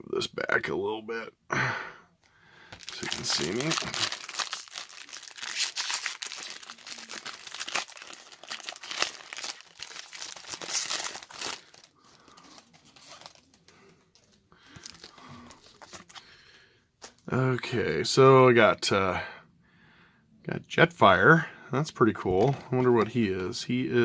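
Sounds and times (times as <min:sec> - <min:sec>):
foil wrapper crinkling and tearing: 0:02.7 - 0:16.3.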